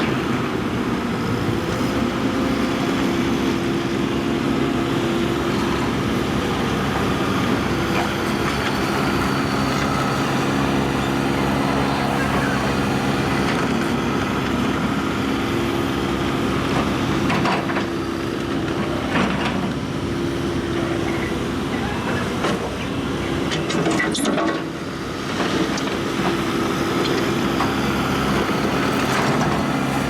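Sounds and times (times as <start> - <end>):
excavator diesel engine running: 0.0 - 30.0.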